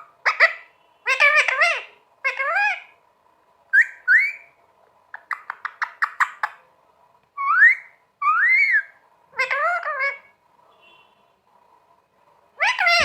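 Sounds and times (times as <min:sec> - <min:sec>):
parrot harsh voice-like call: 0:12.6 - 0:13.0
parrot whistling: 0:12.8 - 0:13.0.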